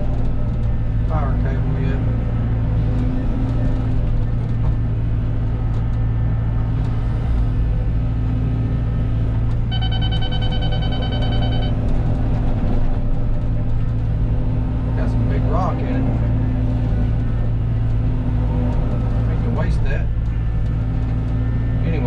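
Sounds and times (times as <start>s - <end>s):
excavator diesel engine: 0.0s - 22.0s
steady beeper tone: 9.7s - 11.8s.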